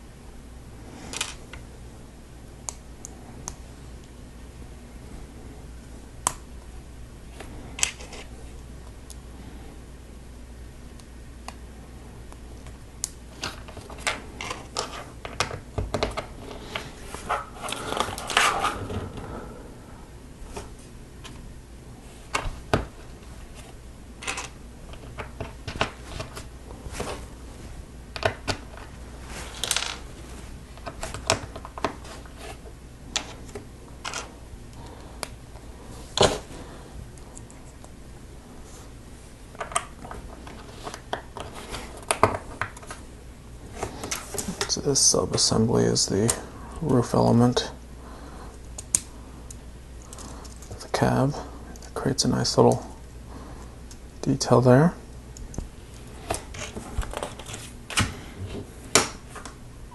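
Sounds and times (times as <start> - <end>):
loose plastic parts rustling: 13.3 - 19.4, 22.1 - 37.9, 48.5 - 52.9, 55.4 - 59.6.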